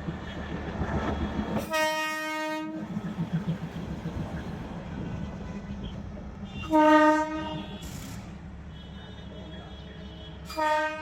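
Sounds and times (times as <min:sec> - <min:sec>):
train rumbling: 0:00.0 - 0:08.8
train horn blast: 0:01.6 - 0:02.9, 0:06.4 - 0:08.2, 0:08.8 - 0:11.0.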